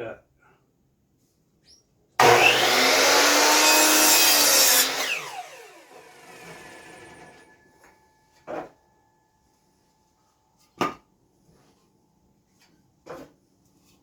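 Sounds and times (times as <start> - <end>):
electric saw cutting board: 2.2 - 7.6
saw blade winding down: 2.2 - 7.6.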